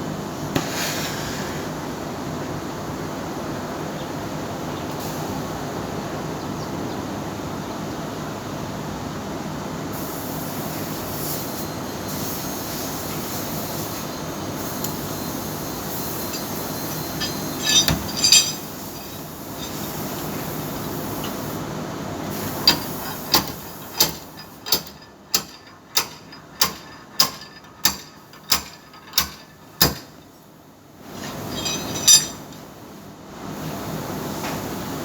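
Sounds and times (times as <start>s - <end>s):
steady mechanical noise: 10.2s - 33.0s.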